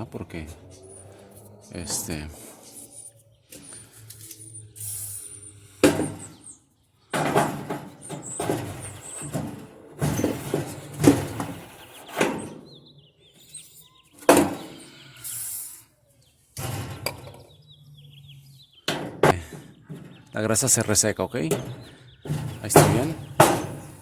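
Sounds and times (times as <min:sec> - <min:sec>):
rubbing and scraping: 0:00.0 - 0:12.7, 0:21.4 - 0:24.0
sharp knocks on roller parts: 0:05.8 - 0:06.4, 0:07.1 - 0:12.6, 0:14.2 - 0:14.8, 0:18.9 - 0:20.2, 0:21.4 - 0:24.0.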